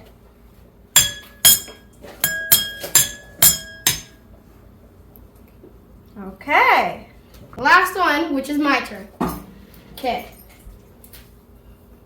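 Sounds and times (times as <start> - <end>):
drinking glasses clinking: 1.0 - 4.2.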